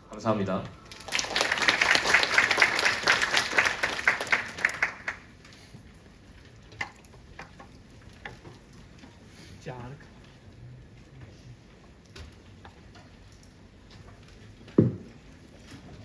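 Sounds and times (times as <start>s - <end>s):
audience applauding: 0.8s - 5.4s
single claps: 0.9s - 5.3s.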